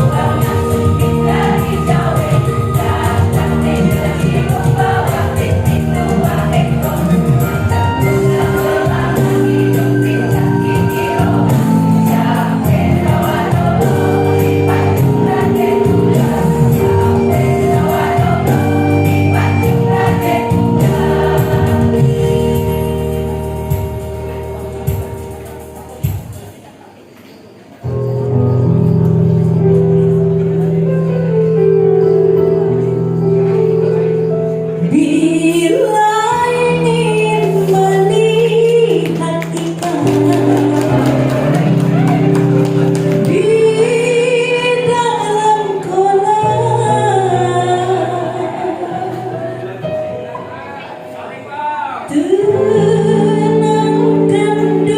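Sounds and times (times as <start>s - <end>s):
women's choir singing: 0.0s - 24.0s, 34.9s - 49.8s
instrumental accompaniment: 0.0s - 54.9s.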